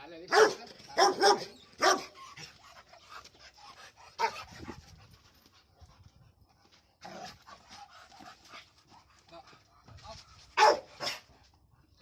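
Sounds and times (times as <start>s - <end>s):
dog barking: 0.3s - 2.2s, 4.2s - 4.4s, 10.6s - 11.2s
dog panting: 1.6s - 10.0s.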